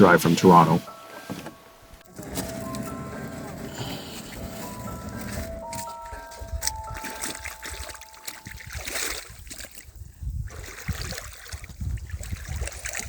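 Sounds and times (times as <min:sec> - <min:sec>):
sustained music notes: 0:00.0 - 0:09.1
low rumble: 0:01.9 - 0:08.0
water splashing around paddle: 0:02.1 - 0:13.0.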